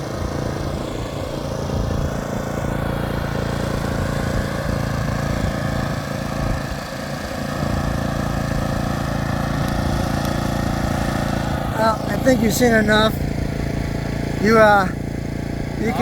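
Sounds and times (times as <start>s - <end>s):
engine running: 0.0s - 16.0s.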